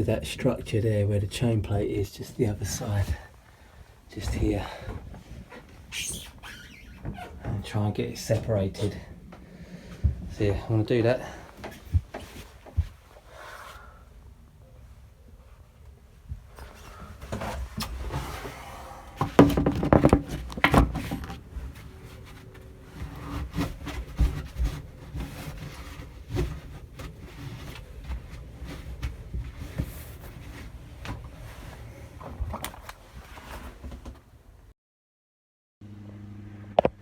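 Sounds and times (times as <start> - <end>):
knocking and clattering on wood: 19.2 - 21.4.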